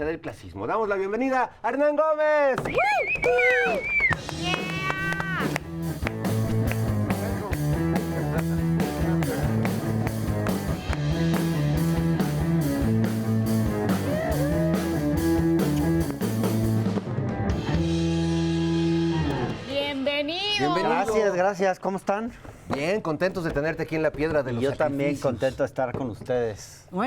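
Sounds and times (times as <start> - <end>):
bass line: 2.8 - 20.0
steady drum beat: 2.8 - 20.7
electric guitar: 4.2 - 20.1.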